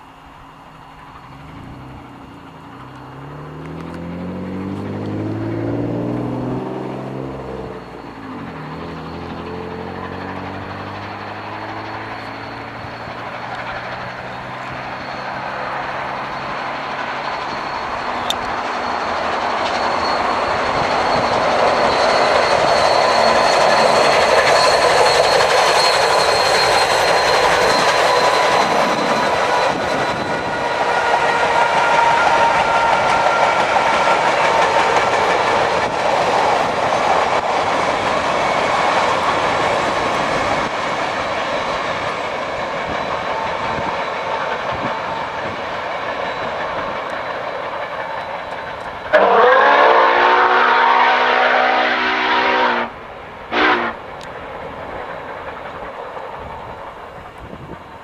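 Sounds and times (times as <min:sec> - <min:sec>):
faint steady squealing tones: 0:00.0 - 0:58.0
train rolling past: 0:00.0 - 0:58.0
wheels clattering on rails: 0:00.7 - 0:51.6, 0:52.5 - 0:58.0
engine hum passing by: 0:01.0 - 0:17.2.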